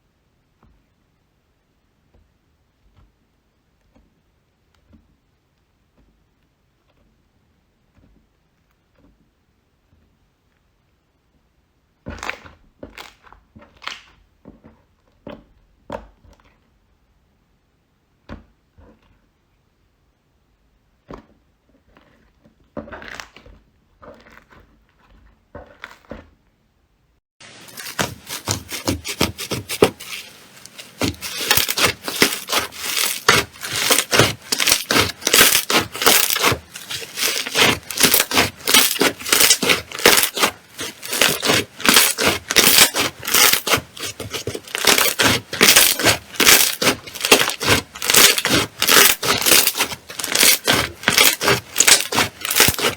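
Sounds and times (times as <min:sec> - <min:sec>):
slime squishing: 0:27.4 - 0:52.9.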